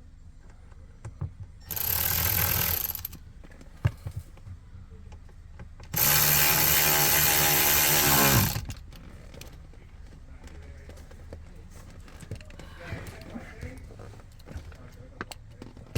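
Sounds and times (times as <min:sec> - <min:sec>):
cordless drill running: 0:01.6 - 0:03.2, 0:06.0 - 0:08.8.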